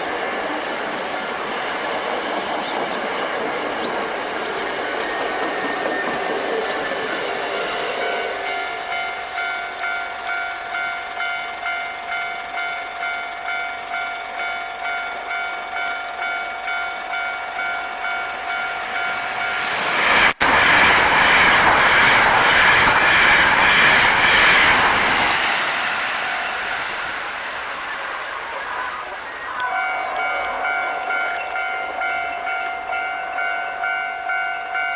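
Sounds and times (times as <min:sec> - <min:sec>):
train passing: 0:00.0 - 0:34.9
train wheels rushing past: 0:00.0 - 0:34.9
two-tone level crossing alarm: 0:29.5 - 0:34.9.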